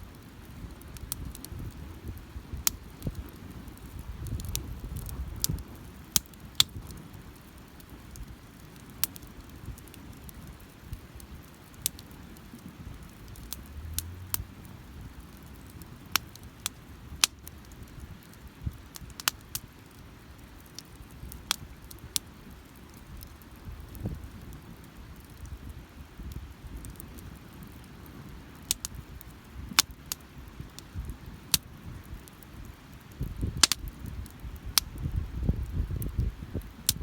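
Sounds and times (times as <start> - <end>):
campfire crackling and popping: 0.0 - 37.0
low rumble: 13.4 - 15.1.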